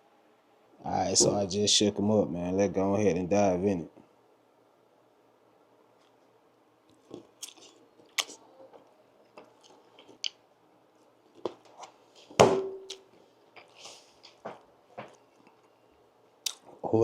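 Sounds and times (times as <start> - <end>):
crunchy chewing: 6.0 - 10.4, 15.0 - 16.8.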